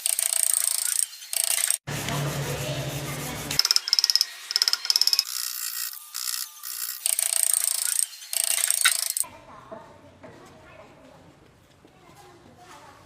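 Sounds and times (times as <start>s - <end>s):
rapid mechanical clicking: 0.0s - 1.8s, 3.5s - 9.2s
hissing workshop noise: 0.5s - 9.2s.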